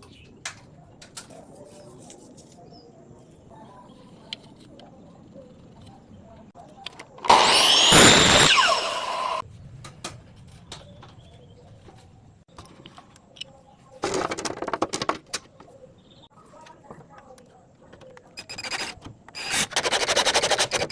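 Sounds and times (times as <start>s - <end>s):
power tool running: 7.2s - 9.4s.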